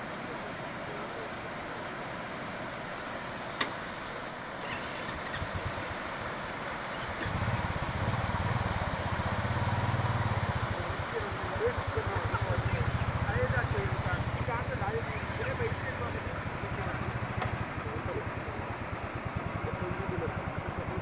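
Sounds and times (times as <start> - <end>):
waterfall rushing: 4.4 - 21.0
vehicle engine throbbing: 7.0 - 21.0.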